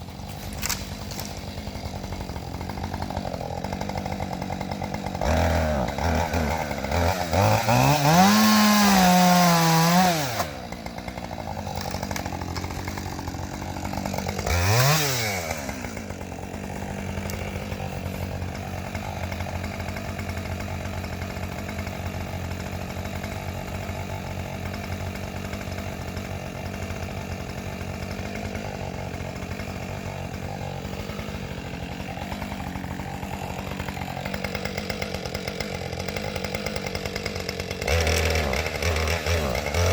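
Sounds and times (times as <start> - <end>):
chainsaw revving and idling: 0.0 - 39.9.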